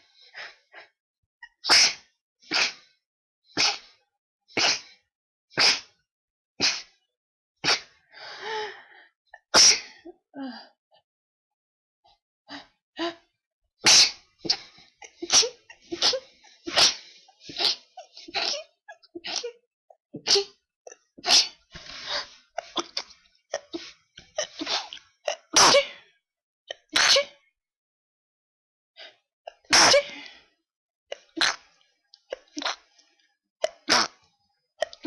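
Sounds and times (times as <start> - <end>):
person sneezing: 1.6 - 2.8, 3.6 - 3.9, 4.6 - 4.9, 5.6 - 5.9, 6.6 - 7.0, 7.6 - 7.9, 9.5 - 10.0, 13.8 - 18.7, 21.2 - 26.0, 27.0 - 27.4, 29.7 - 30.3, 31.4 - 31.7, 33.6 - 34.2.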